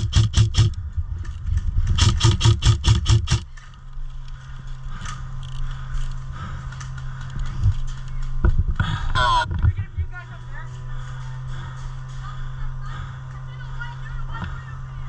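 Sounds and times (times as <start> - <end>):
airsoft gun rapid shots: 0.0 - 0.8, 2.0 - 3.5
steady low hum: 0.0 - 15.0.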